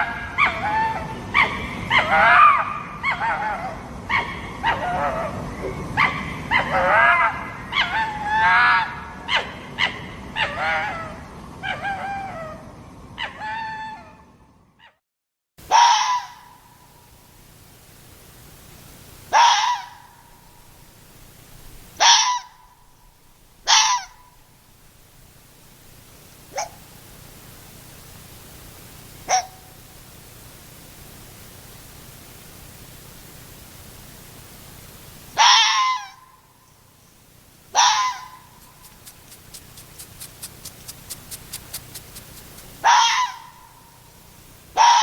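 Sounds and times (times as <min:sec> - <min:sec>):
fox giving sharp calls: 0:15.7 - 0:16.6, 0:19.3 - 0:20.2, 0:22.0 - 0:22.7, 0:23.6 - 0:24.4, 0:29.3 - 0:29.6, 0:35.4 - 0:36.4, 0:37.7 - 0:43.8, 0:44.8 - 0:45.0
rapid clicks: 0:38.6 - 0:42.8.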